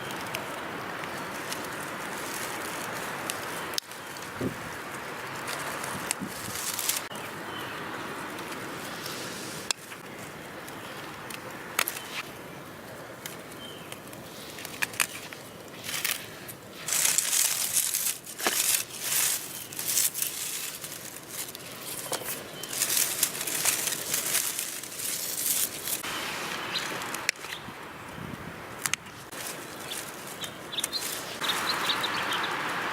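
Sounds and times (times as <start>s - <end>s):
dry stems crackling and rustling: 0.0s - 32.9s
pruning shears snipping: 26.8s - 27.6s.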